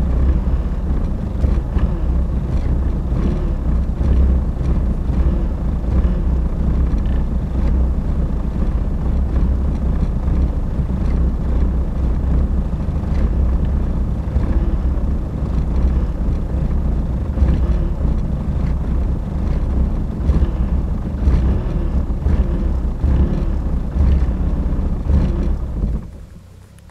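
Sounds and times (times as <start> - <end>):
diesel engine running: 0.0 - 26.9.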